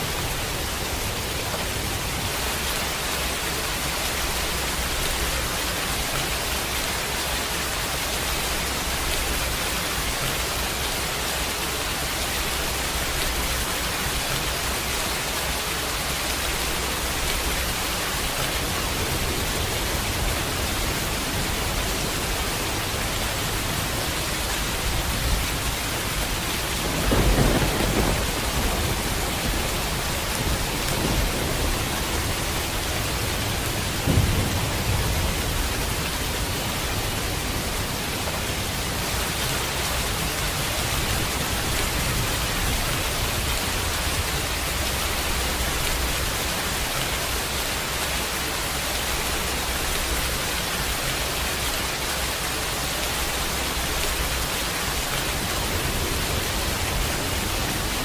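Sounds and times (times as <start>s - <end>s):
heavy rain hiss: 0.0s - 58.0s
thunder rumbling: 18.4s - 46.3s.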